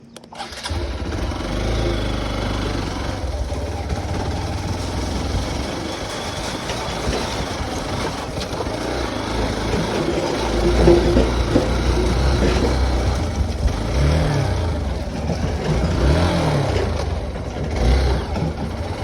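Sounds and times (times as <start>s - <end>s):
motorcycle engine running: 0.4s - 19.0s.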